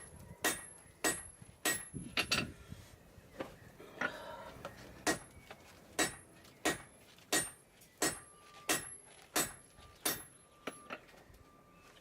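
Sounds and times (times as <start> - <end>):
hammer striking steel on anvil: 6.0 - 11.0.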